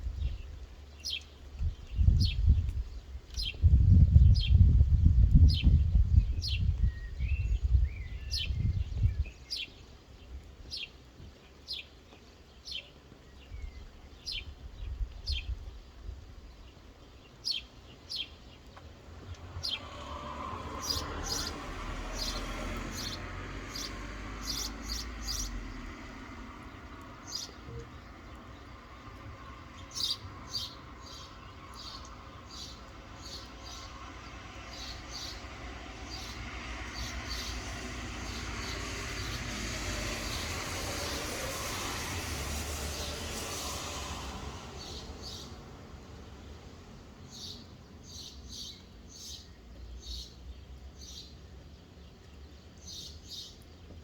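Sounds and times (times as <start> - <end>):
songbird chirping: 5.6 - 41.2
soft rain hiss: 9.3 - 54.0.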